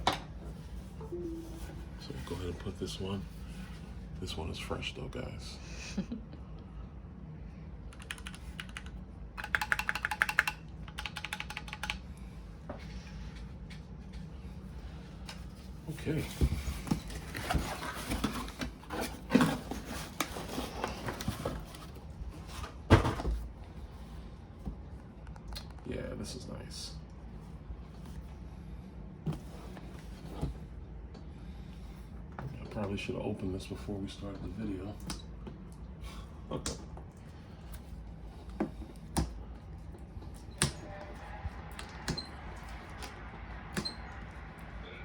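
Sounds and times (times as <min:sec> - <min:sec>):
clicks and knocks handling keyboard: 0:08.0 - 0:12.0.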